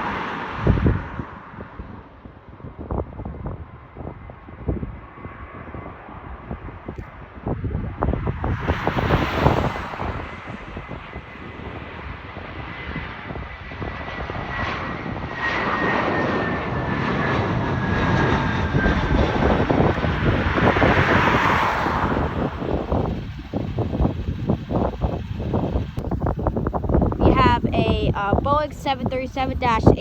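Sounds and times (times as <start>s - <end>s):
jet airliner passing overhead: 0.0s - 30.0s
thin falling engine whine: 8.4s - 30.0s.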